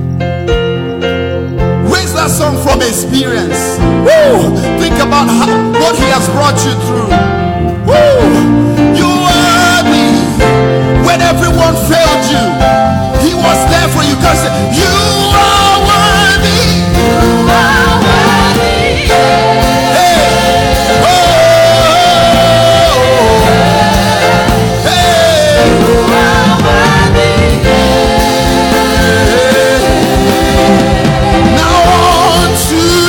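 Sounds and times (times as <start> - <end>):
band accompaniment: 0.0 - 33.0
singers holding long notes: 14.4 - 33.0.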